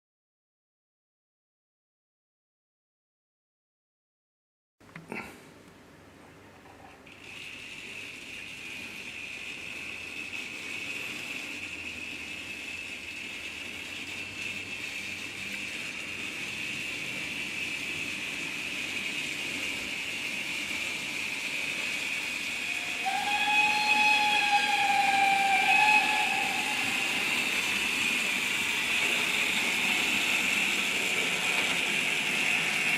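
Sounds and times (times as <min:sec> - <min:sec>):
steam hissing: 0:07.2 - 0:32.9
steam locomotive whistle: 0:22.3 - 0:30.5.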